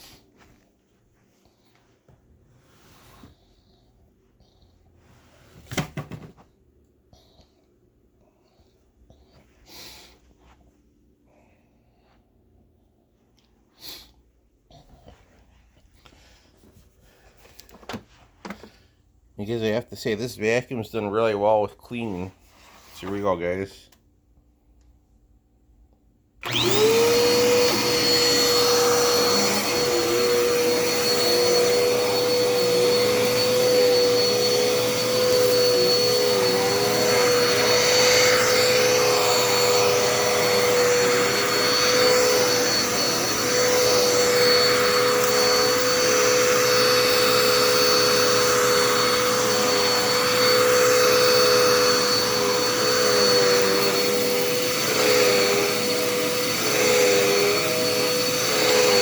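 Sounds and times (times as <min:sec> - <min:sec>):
vacuum cleaner motor whine: 0:26.4 - 0:59.0.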